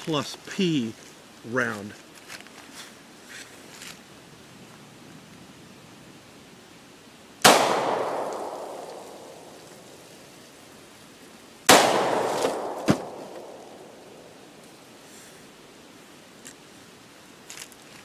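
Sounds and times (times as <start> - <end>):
gunshots with echo: 7.4 - 9.6, 11.7 - 14.2
sharp crack: 7.4 - 10.2, 11.6 - 14.8.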